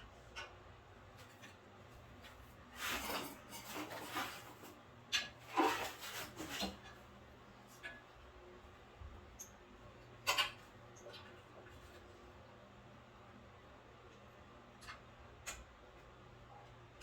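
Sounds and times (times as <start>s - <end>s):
faint steady hum: 0.0s - 17.0s
parts rubbing and scraping: 2.3s - 7.0s.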